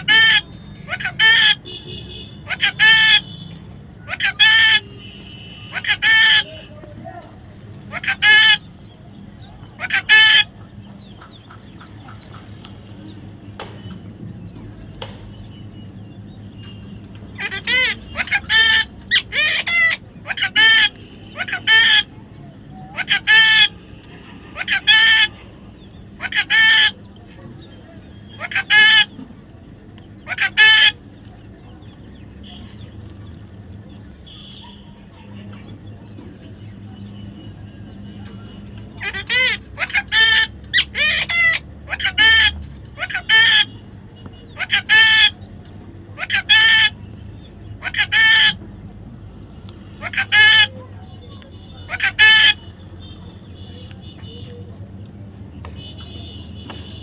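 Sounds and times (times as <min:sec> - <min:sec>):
parrot squawking: 0:00.0 - 0:03.4, 0:04.0 - 0:12.5, 0:17.4 - 0:22.1, 0:22.8 - 0:23.8, 0:24.6 - 0:25.4, 0:26.2 - 0:27.0, 0:28.3 - 0:29.2, 0:30.2 - 0:31.0, 0:39.0 - 0:43.8, 0:44.6 - 0:45.4, 0:46.1 - 0:47.0, 0:47.8 - 0:48.6, 0:50.0 - 0:50.8, 0:51.8 - 0:52.7.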